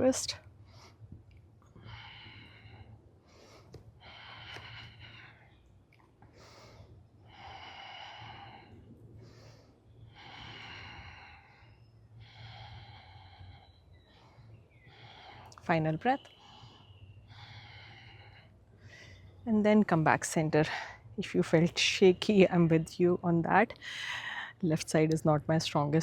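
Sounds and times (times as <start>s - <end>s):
person breathing slowly: 0.6s - 19.4s, 23.8s - 24.6s.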